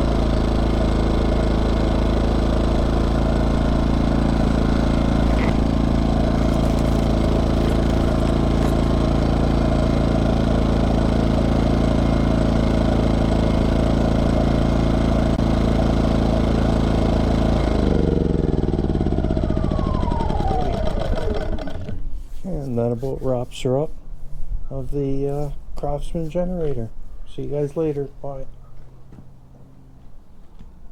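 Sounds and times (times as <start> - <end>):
generator engine running: 0.0 - 23.1.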